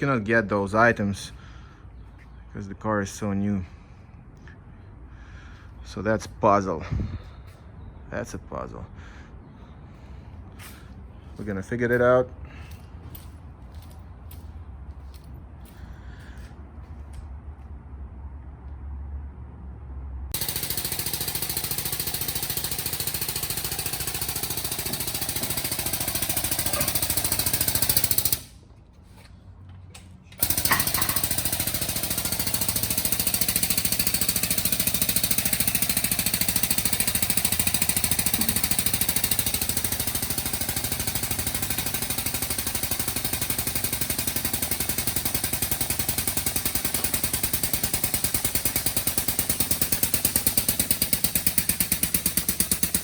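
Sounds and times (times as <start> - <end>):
air hydraulic pump chattering: 20.4 - 28.6, 30.4 - 53.0.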